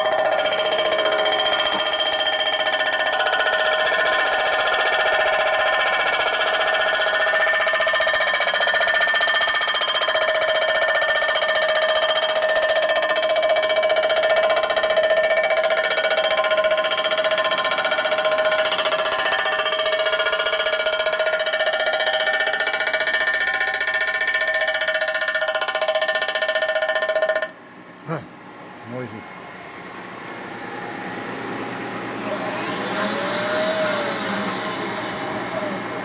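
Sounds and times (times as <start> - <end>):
high ringing cutter squeal: 0.0 - 13.0, 14.0 - 22.7, 32.2 - 36.0
machine tool cutting metal: 14.2 - 24.3, 32.2 - 36.0.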